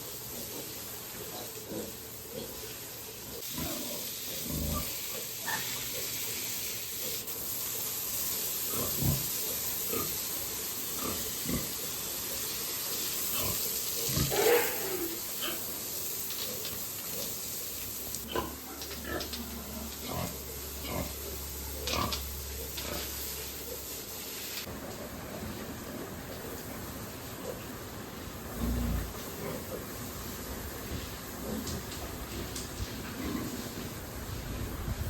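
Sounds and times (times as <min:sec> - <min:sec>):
steady hiss: 0:00.0 - 0:35.0
pigs grunting: 0:03.3 - 0:06.1, 0:08.7 - 0:10.2, 0:10.9 - 0:11.9, 0:13.3 - 0:15.7, 0:18.2 - 0:23.8, 0:28.5 - 0:30.0.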